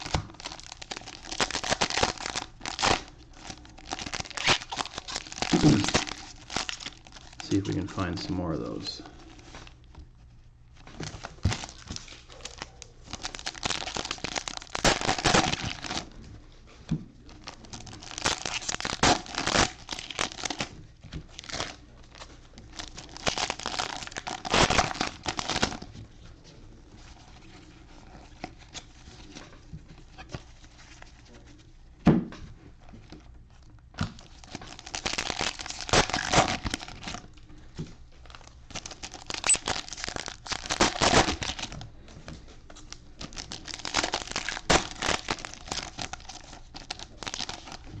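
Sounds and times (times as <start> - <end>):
card wrappers tearing and crinkling: 0.0 - 9.8, 10.8 - 16.1, 17.3 - 26.0, 34.1 - 37.4, 38.2 - 41.8, 42.7 - 48.0.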